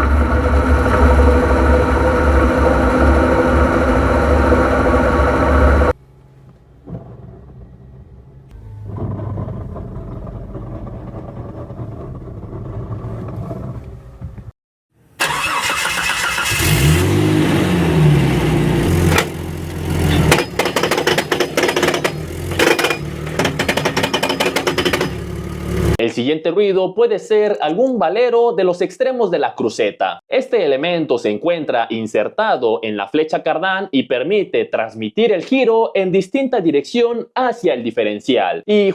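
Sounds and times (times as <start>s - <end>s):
engine revving: 0.0s - 6.0s, 15.2s - 26.0s
vehicle drone: 0.0s - 14.5s, 16.4s - 26.0s
sharp metal knocks: 20.1s - 26.0s.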